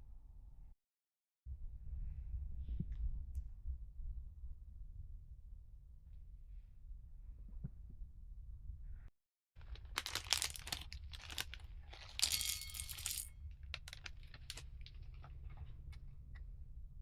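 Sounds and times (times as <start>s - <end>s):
crinkling rustling clicks: 9.6s - 16.1s.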